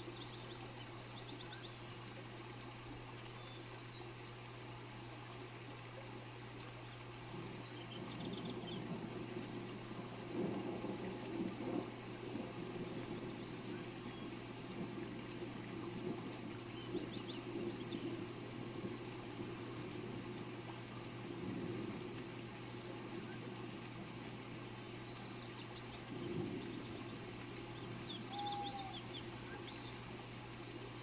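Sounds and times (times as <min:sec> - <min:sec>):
rain falling: 0:00.0 - 0:31.0
birds chirping: 0:16.7 - 0:18.2, 0:25.0 - 0:30.1.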